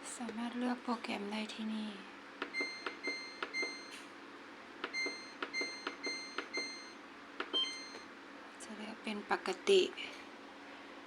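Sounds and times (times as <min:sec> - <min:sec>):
washing machine control panel beeps: 0:02.4 - 0:04.0, 0:04.8 - 0:08.1.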